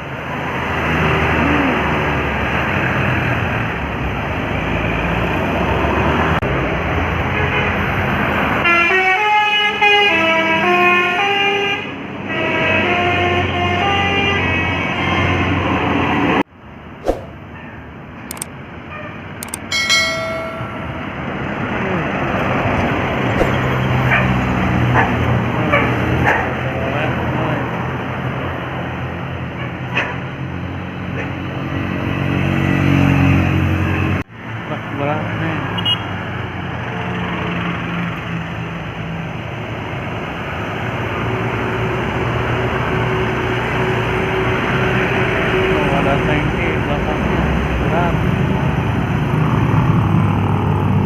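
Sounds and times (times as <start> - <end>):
bus diesel engine: 0.0 - 51.0
road noise: 0.0 - 51.0
bus horn: 8.6 - 15.8.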